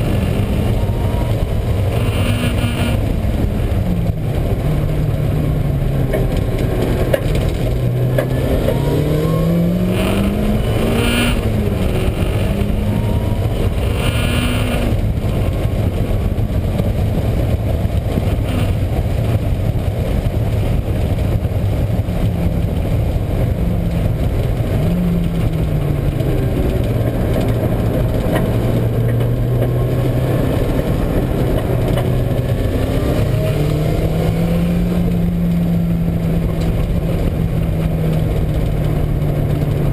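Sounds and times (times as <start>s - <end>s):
car engine revving: 0.0s - 39.9s
heavy road noise: 0.0s - 39.9s.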